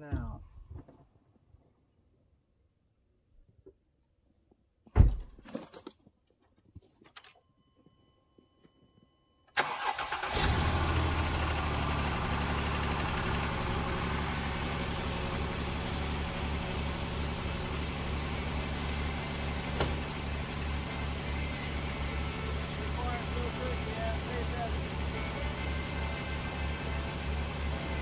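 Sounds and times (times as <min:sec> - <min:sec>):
car engine cranking and idling: 0:09.5 - 0:28.0.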